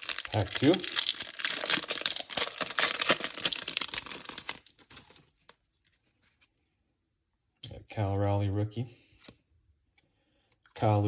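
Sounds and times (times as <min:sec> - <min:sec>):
foil wrapper tearing and crinkling: 0:00.0 - 0:05.1.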